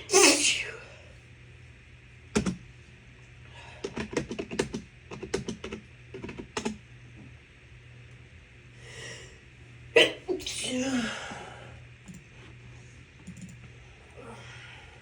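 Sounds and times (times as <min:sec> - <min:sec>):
loud sneeze: 0:00.0 - 0:00.7, 0:10.0 - 0:10.9.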